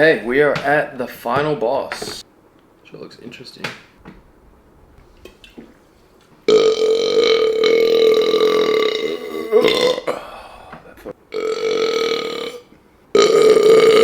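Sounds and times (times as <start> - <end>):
man burping loudly: 6.5 - 14.0.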